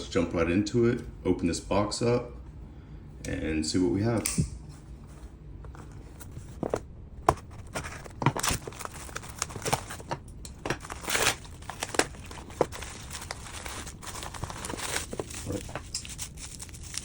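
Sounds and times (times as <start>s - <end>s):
packaging crinkling and tearing: 6.2s - 17.0s.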